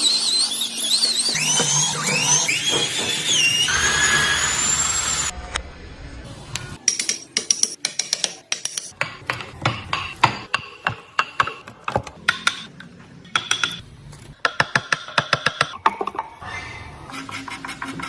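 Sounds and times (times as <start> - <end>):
hard objects tapping and clicking: 6.9 - 16.4.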